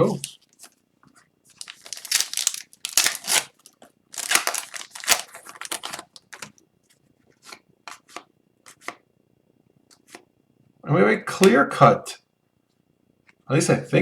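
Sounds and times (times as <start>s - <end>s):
foil wrapper crinkling and tearing: 1.5s - 6.6s.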